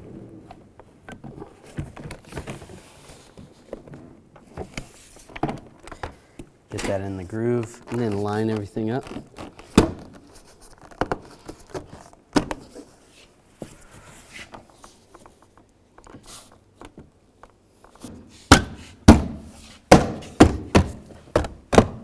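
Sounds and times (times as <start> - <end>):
loud thumps on door panel: 18.5 - 22.0.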